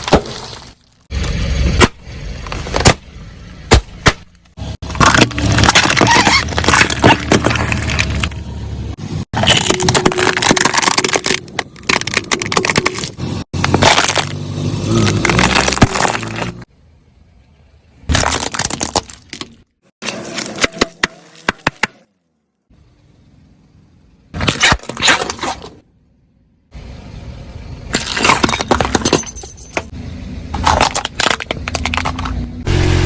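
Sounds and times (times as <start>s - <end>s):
car tyre crushing plastic bottles: 0.0s - 8.6s, 9.3s - 16.7s, 18.1s - 22.0s, 24.4s - 25.8s, 27.9s - 32.7s.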